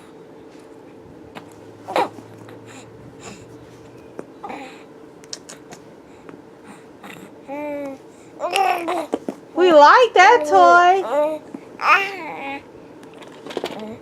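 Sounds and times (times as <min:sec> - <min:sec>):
faint steady hum: 0:00.0 - 0:14.0
baby vocal sounds and breathing: 0:01.4 - 0:03.8, 0:04.4 - 0:04.9.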